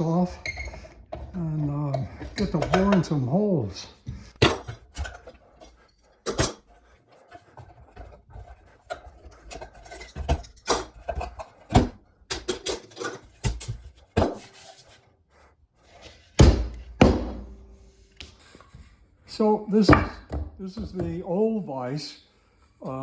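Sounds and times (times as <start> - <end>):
wooden knocks: 16.4 - 17.8, 19.8 - 21.4.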